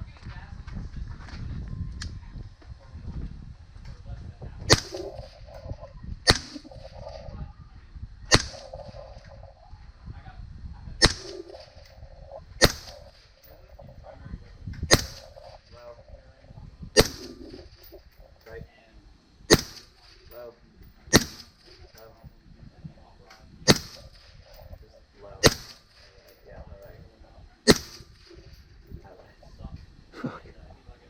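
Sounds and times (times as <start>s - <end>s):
rifle shots cracking: 4.7s - 5.6s, 6.3s - 7.3s, 8.3s - 9.3s, 11.0s - 13.8s, 14.9s - 15.9s, 17.0s - 18.2s, 19.5s - 20.4s, 21.1s - 22.1s, 23.7s - 24.7s, 25.4s - 26.3s, 27.7s - 28.6s.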